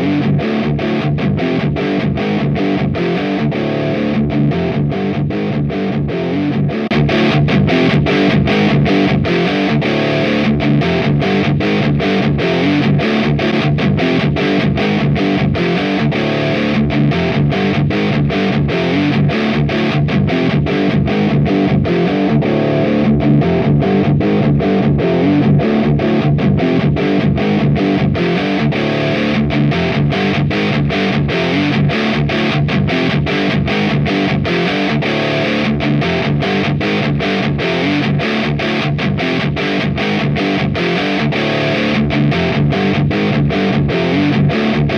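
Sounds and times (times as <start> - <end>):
distorted electric guitar riffs: 0.0 - 44.9
looped guitar layers: 0.0 - 44.9.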